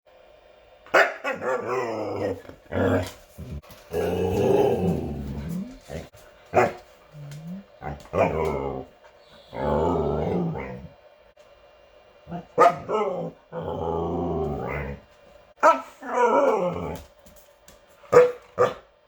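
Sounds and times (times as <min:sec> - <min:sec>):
huskies growly vocalizations: 0:01.3 - 0:11.1, 0:12.2 - 0:15.2, 0:16.0 - 0:17.1.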